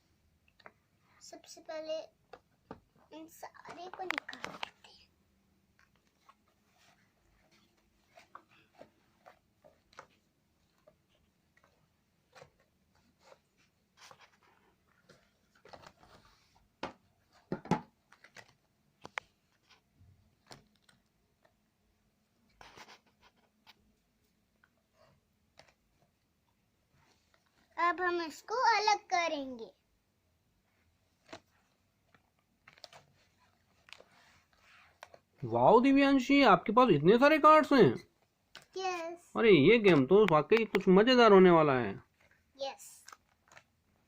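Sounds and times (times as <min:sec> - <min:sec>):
cardboard cards rustling: 0:01.8 - 0:05.1, 0:05.8 - 0:21.6, 0:30.8 - 0:35.4, 0:42.1 - 0:44.0.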